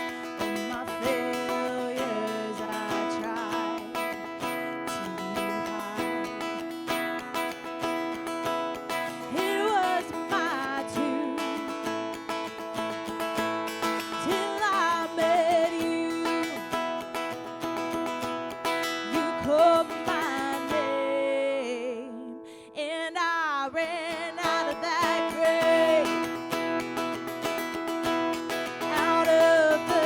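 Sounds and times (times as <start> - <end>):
person singing with vibrato: 0.0 - 30.0
strummed acoustic guitar: 0.0 - 30.0.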